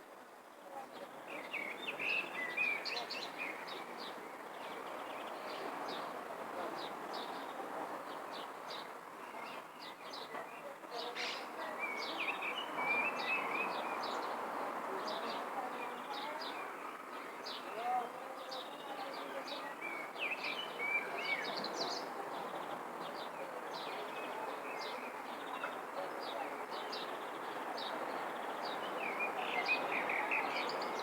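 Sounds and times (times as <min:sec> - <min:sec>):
birds chirping and twittering: 0:17.3 - 0:31.0.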